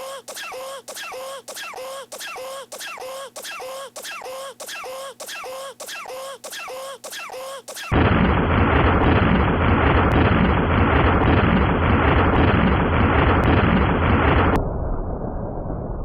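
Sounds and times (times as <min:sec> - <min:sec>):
short squeaky sounds falling in pitch: 0:00.0 - 0:07.9
harsh explosion-like blast: 0:07.9 - 0:16.0.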